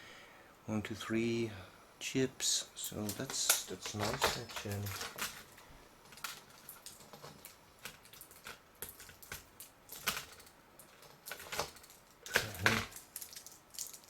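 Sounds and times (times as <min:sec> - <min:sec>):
metal tools clicking and tapping: 0:06.1 - 0:14.0.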